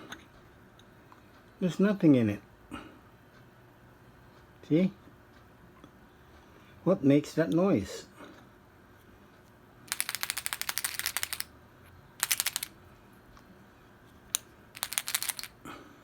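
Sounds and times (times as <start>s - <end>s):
can rattling when shaken: 9.9s - 11.5s, 12.2s - 12.7s, 14.8s - 15.6s.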